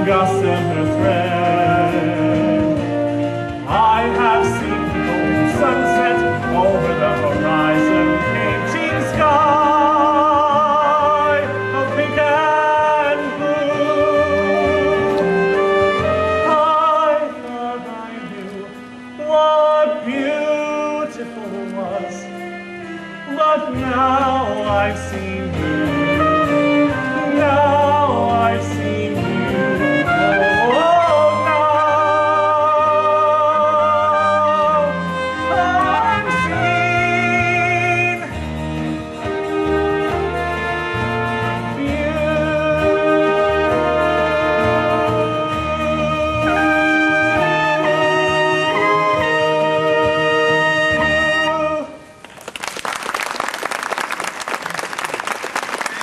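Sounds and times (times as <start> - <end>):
pit band playing show tune: 0.0 - 52.2
audience applause: 52.2 - 56.0.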